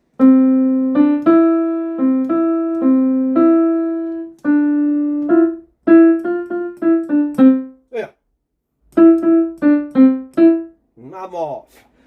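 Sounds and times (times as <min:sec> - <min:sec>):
digital piano slow melody: 0:00.0 - 0:07.9, 0:08.8 - 0:10.8.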